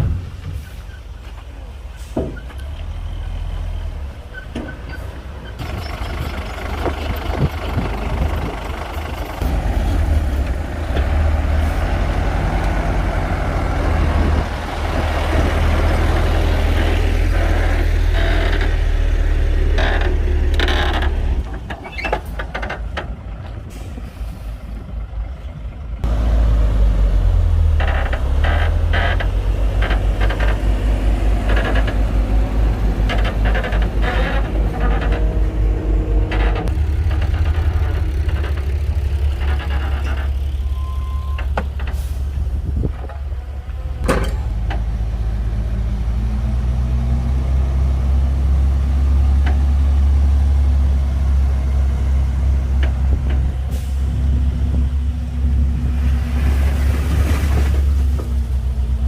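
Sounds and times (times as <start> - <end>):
heavy diesel machinery rumbling: 0.0 - 59.0
metallic clanks: 44.0 - 44.9.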